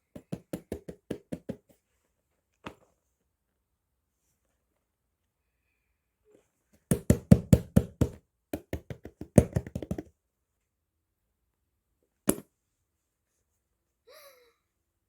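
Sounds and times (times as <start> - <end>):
rapid knocking on hard surface: 0.1 - 1.8, 6.9 - 10.1.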